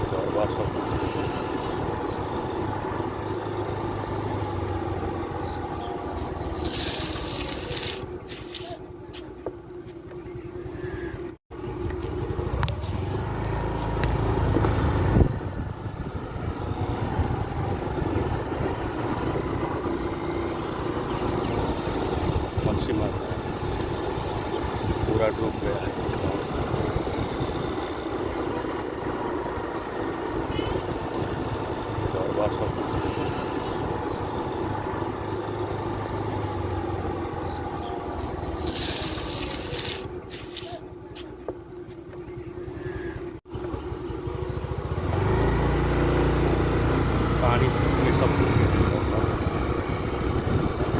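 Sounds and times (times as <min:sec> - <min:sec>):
motorcycle engine running: 0:00.0 - 0:50.9
wind rumble on microphone: 0:11.8 - 0:19.8, 0:21.5 - 0:27.8, 0:48.1 - 0:50.9.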